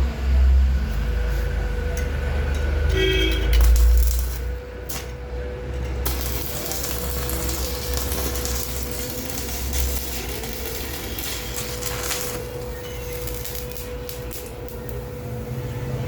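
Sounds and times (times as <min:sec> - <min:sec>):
steady hum: 0:00.0 - 0:16.0
arc welding crackling hiss: 0:03.0 - 0:05.2, 0:06.0 - 0:16.0.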